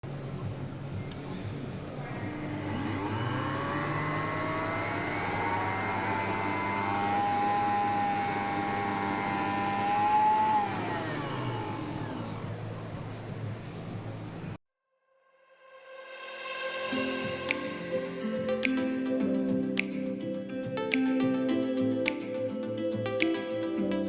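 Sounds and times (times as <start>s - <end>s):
blender motor whining: 0.7s - 13.9s.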